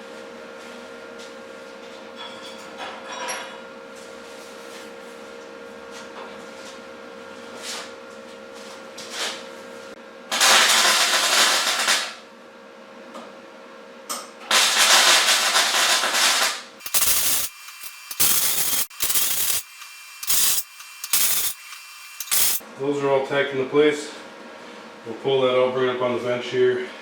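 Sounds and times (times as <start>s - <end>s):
arc welder crackling: 10.3s - 12.2s, 14.5s - 22.6s
electrical hum: 16.8s - 23.0s.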